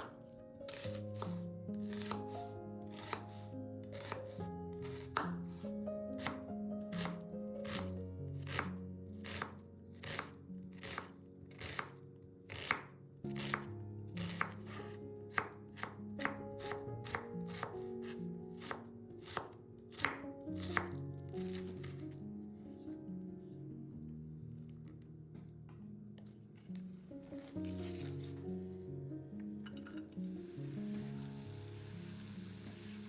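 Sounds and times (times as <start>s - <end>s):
knife chopping on cutting board: 0.0s - 3.4s, 4.0s - 5.6s, 6.2s - 6.4s, 7.0s - 13.7s, 14.3s - 21.9s
soft background music: 0.0s - 33.0s.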